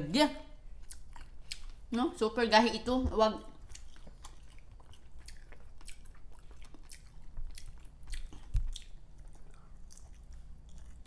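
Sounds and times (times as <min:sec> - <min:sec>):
chewing and wet mouth clicks: 0:00.8 - 0:01.8, 0:03.6 - 0:11.0.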